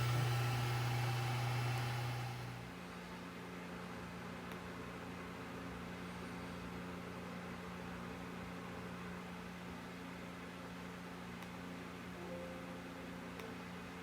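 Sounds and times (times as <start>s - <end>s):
cooling fans whirring: 0.0s - 3.0s.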